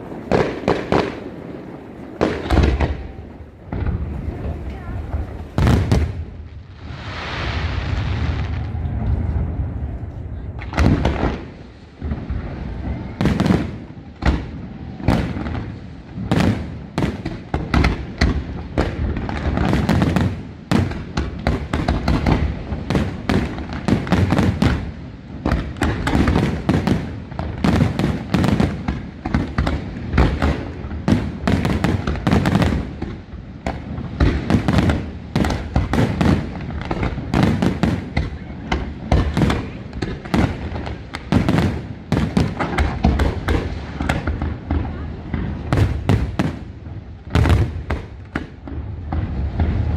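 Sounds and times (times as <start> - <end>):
low rumble: 3.0 - 13.2.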